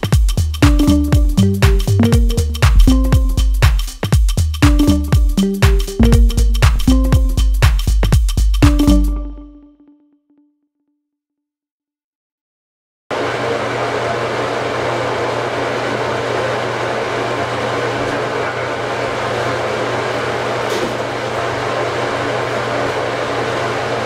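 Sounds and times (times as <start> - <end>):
exhaust fan whirring: 0.7 - 3.7, 4.8 - 8.0, 13.1 - 24.0.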